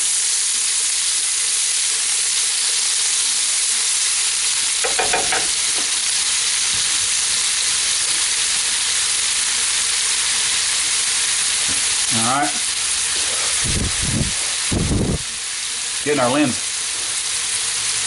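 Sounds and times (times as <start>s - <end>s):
onions and bacon sizzling in a pot: 0.0s - 18.0s.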